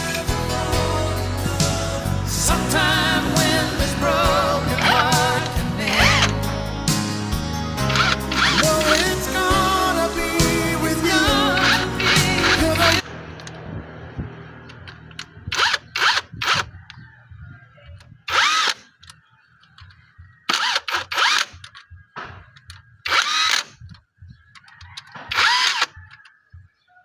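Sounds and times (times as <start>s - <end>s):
power tool whining in bursts: 7.8s - 9.2s, 11.4s - 13.0s, 15.4s - 16.8s, 18.2s - 19.0s, 20.5s - 21.8s, 23.0s - 23.8s, 25.2s - 26.0s.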